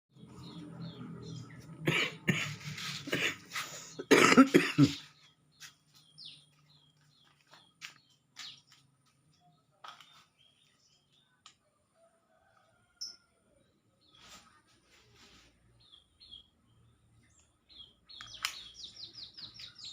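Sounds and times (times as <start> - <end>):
person coughing hard: 1.8 - 5.1
bird chirps: 4.8 - 11.4, 15.8 - 19.9.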